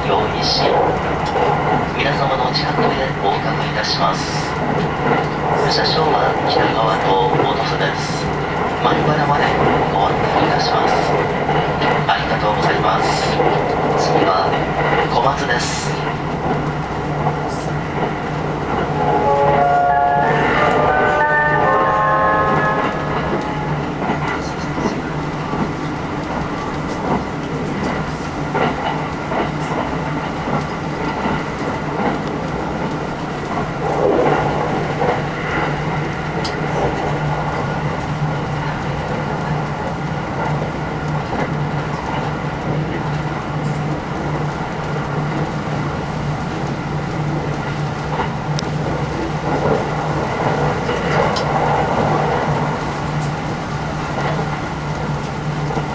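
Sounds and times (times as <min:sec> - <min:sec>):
train cabin rumble: 0:00.0 - 0:55.9.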